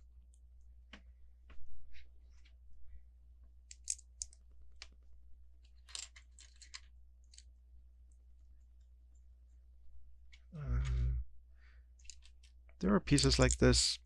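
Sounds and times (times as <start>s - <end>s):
plastic toy bricks clicking: 3.7s - 4.9s, 5.8s - 7.5s
plastic pieces rattling: 5.6s - 7.5s.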